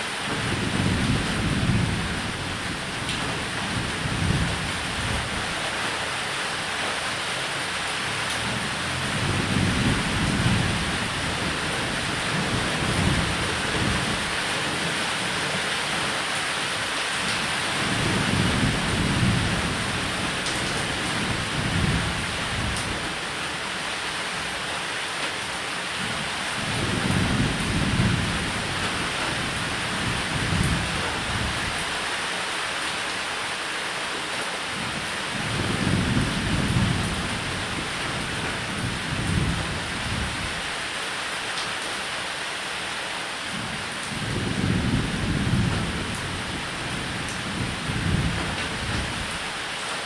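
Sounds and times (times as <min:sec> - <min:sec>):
heavy rain on a roof: 0:00.0 - 0:50.0
thunder rumbling: 0:08.4 - 0:14.9, 0:44.2 - 0:49.4.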